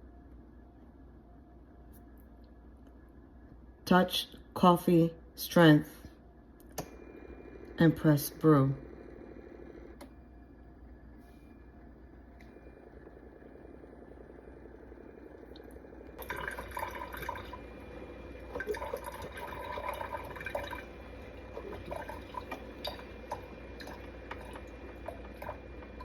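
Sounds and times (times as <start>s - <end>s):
faint low hum: 0.0s - 26.0s
coffee dripping into cup: 12.4s - 26.0s.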